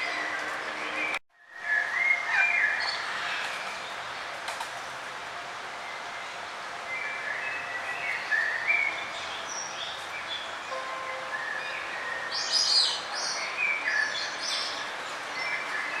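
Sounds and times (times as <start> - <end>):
songbirds singing and chirping: 5.8 - 16.0.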